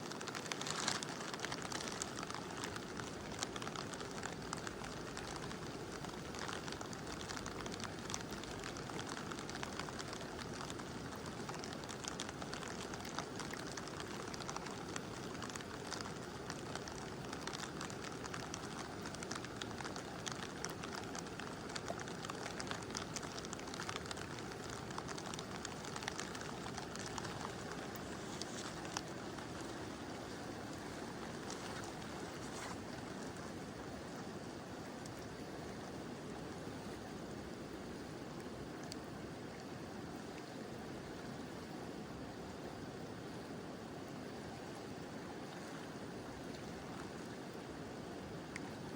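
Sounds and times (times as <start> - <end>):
river rushing: 0.0 - 5.4, 11.6 - 36.6
raindrops hitting: 0.0 - 34.2.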